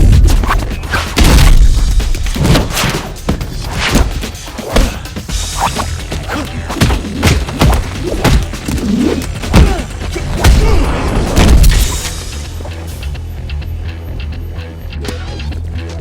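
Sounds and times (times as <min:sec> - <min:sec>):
punch and kick impacts: 0:00.0 - 0:12.4
swishes: 0:02.2 - 0:06.8.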